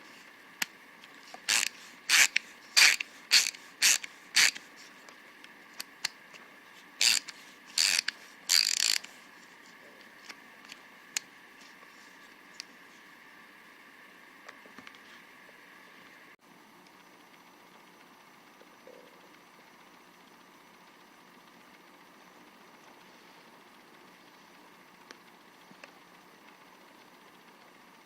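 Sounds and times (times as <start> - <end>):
ratcheting bit driver clicking: 1.3 - 4.6, 7.0 - 9.1.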